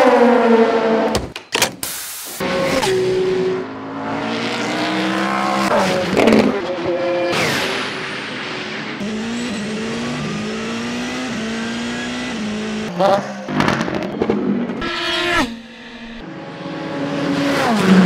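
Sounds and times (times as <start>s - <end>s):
race car engines shifting gears: 2.5s - 7.9s.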